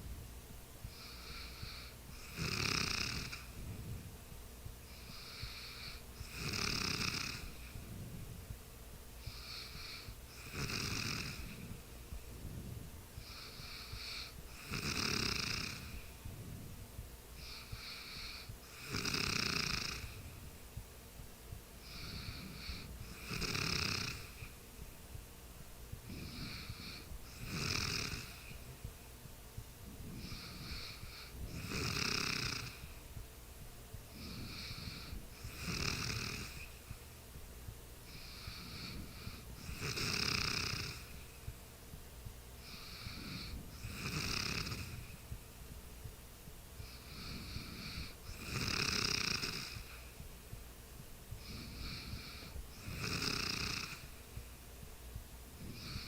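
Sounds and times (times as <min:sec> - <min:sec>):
person snoring: 0:00.9 - 0:03.5, 0:04.9 - 0:07.8, 0:09.2 - 0:11.8, 0:13.2 - 0:16.1, 0:17.4 - 0:20.4, 0:21.8 - 0:24.6, 0:26.0 - 0:28.6, 0:30.1 - 0:32.9, 0:34.1 - 0:36.8, 0:38.1 - 0:41.2, 0:42.6 - 0:45.2, 0:46.8 - 0:50.0, 0:51.4 - 0:54.1, 0:55.6 - 0:56.0.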